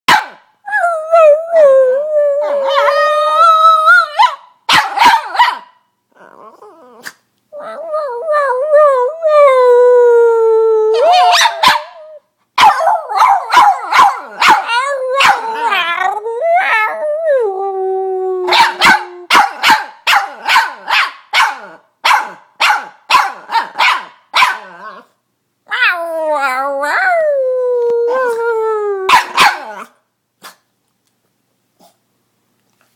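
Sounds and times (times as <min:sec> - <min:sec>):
dog barking: 0:00.1 - 0:00.5, 0:04.2 - 0:05.8, 0:11.3 - 0:12.0, 0:12.6 - 0:15.4, 0:18.5 - 0:24.7, 0:29.1 - 0:30.6
dog howling and whining: 0:00.7 - 0:04.4, 0:06.2 - 0:19.3, 0:25.7 - 0:29.9.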